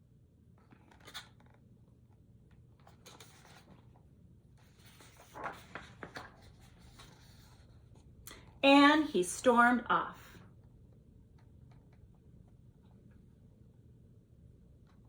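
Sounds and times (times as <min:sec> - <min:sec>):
book pages rustling: 0:00.6 - 0:01.6, 0:02.5 - 0:08.1.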